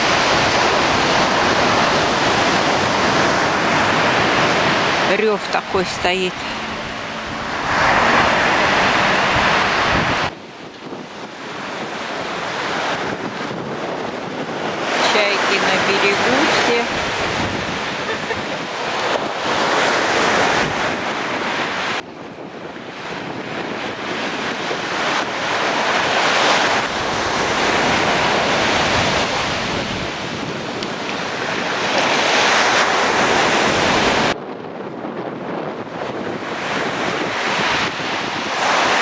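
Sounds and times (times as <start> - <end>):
surf breaking on pebble shore: 0.0 - 21.8
wind buffeting microphone: 0.0 - 39.0.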